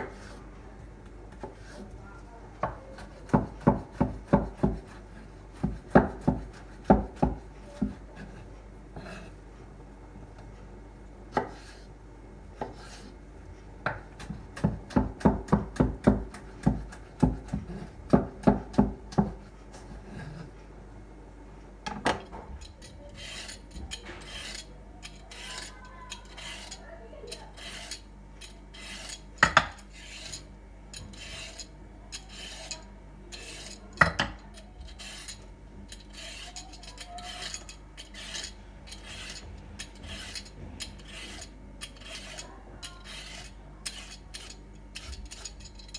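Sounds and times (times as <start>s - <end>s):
knife chopping on cutting board: 2.6s - 8.4s, 11.3s - 11.8s, 12.6s - 13.1s, 13.8s - 20.4s, 28.8s - 30.4s, 33.4s - 35.3s
utensils scraping dishes: 21.9s - 45.9s.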